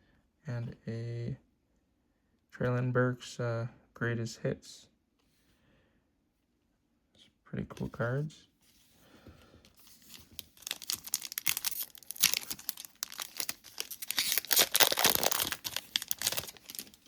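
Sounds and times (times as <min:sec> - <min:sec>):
foil wrapper tearing and crinkling: 0:10.0 - 0:17.0.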